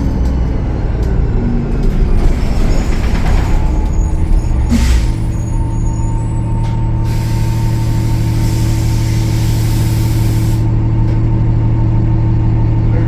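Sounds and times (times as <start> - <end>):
bus diesel engine humming: 0.0 - 13.0
air hissing: 4.5 - 6.3, 6.9 - 10.8.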